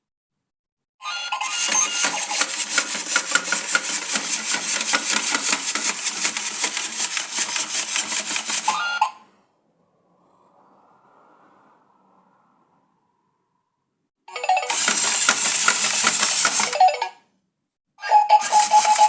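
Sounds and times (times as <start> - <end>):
telephone bell ringing: 1.1 - 5.2, 8.5 - 9.2, 14.3 - 17.2, 18.1 - 19.0.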